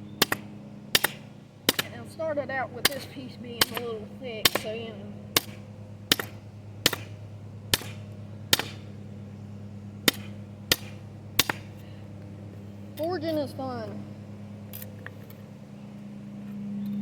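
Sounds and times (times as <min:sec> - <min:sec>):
steady low hum: 0:00.0 - 0:17.0
hammer striking metal: 0:00.2 - 0:01.9, 0:03.6 - 0:04.8, 0:05.4 - 0:08.9, 0:10.0 - 0:11.8.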